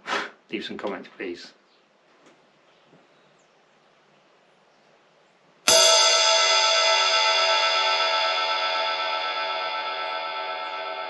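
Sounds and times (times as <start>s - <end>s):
ride cymbal ringing: 5.7s - 11.0s.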